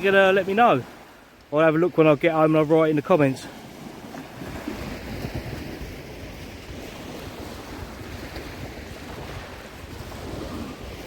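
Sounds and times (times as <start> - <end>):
small waves washing on shore: 0.0 - 11.0
wind on microphone: 3.6 - 11.0.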